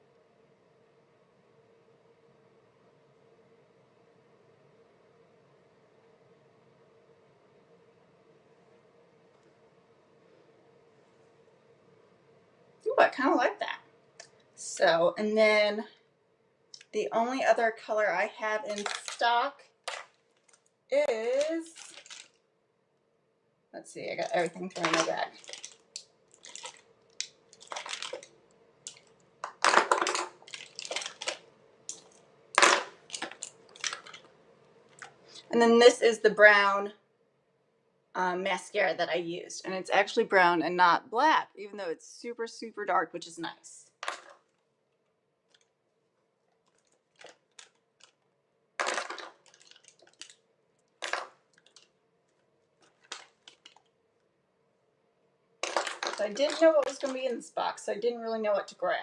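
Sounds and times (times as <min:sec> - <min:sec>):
cosmetic containers clattering: 0:18.6 - 0:20.7, 0:21.4 - 0:22.4, 0:24.2 - 0:28.3, 0:28.9 - 0:34.3, 0:44.0 - 0:44.4, 0:46.6 - 0:48.2, 0:48.8 - 0:50.4, 0:51.0 - 0:51.9, 0:52.8 - 0:53.9, 0:55.6 - 0:57.4
small clicks of makeup items: 0:46.6 - 0:48.2, 0:48.8 - 0:52.0, 0:52.8 - 0:53.9.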